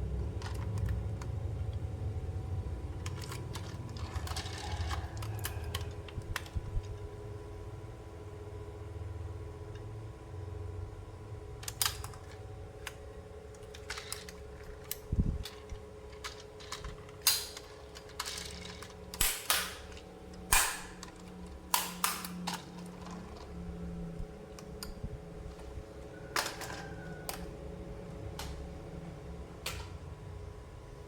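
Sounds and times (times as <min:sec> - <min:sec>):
faint steady hum: 0:00.0 - 0:31.0
plastic toy pieces clicking: 0:03.0 - 0:06.6, 0:11.6 - 0:23.5.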